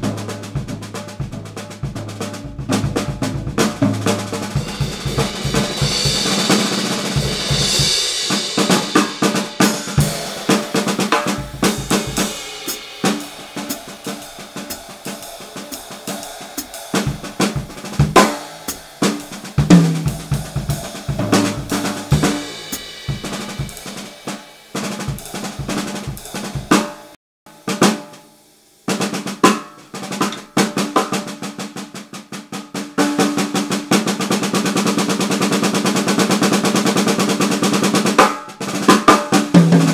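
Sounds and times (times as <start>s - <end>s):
bass drum: 0.0s - 27.2s
snare drum strokes and rolls: 0.0s - 28.3s, 28.9s - 39.9s
hi-hat and cymbals ringing: 0.0s - 31.6s.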